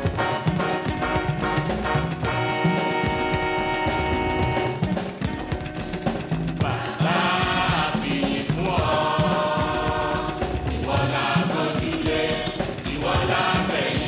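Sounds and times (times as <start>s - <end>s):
band playing: 0.0s - 14.0s
steady drum beat: 0.0s - 14.0s
choir singing: 6.6s - 14.0s.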